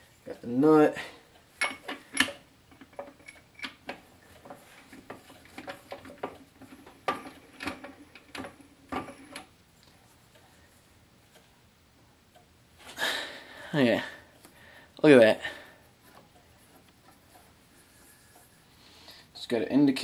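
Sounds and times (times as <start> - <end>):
metal parts clinking and knocking: 1.6 - 9.4.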